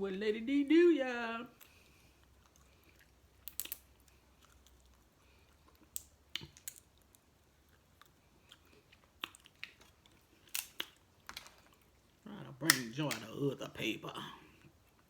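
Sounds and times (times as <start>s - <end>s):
quiet chewing: 1.5s - 12.2s, 14.2s - 15.0s
sharp clicks and cracks: 3.4s - 3.8s, 12.6s - 13.4s.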